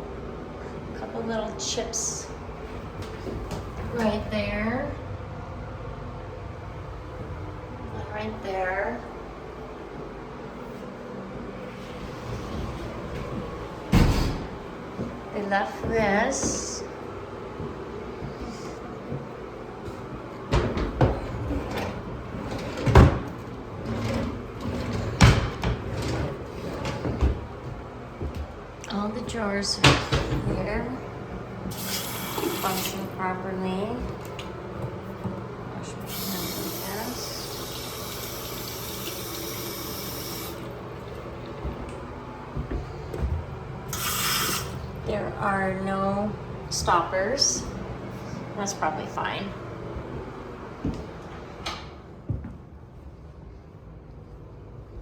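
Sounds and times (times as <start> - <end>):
cabinet doors and drawers knocking: 13.9 - 14.6, 25.1 - 26.0
faucet running into sink: 31.7 - 33.1, 36.1 - 41.4, 43.9 - 44.8.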